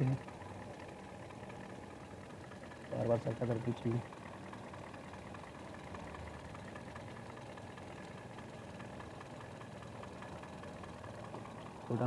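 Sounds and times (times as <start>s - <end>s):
car engine idling: 8.4s - 12.0s.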